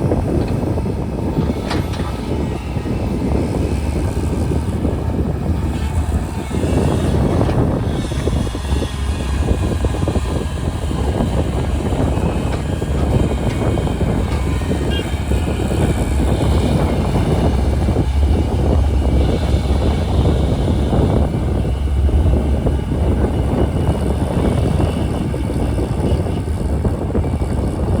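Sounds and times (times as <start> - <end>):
diesel engine rumbling: 0.0 - 28.0.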